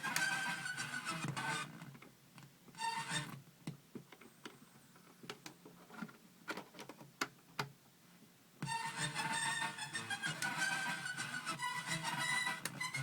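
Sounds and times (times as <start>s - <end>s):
electronic toy sound: 8.7s - 13.0s.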